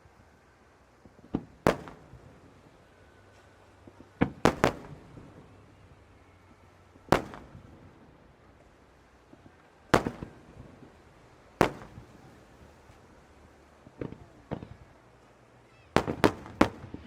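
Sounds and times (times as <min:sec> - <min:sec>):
fireworks shells bursting: 0:16.0 - 0:17.0.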